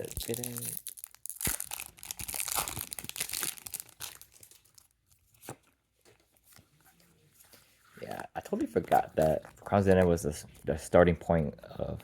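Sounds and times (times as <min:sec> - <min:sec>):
foil pack tearing and crinkling: 0:00.0 - 0:04.8.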